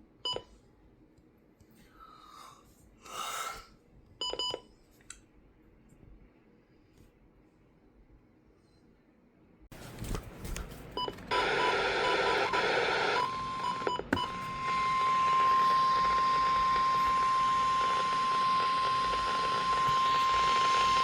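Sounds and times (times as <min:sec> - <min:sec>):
steady alarm tone: 0:11.3 - 0:21.0.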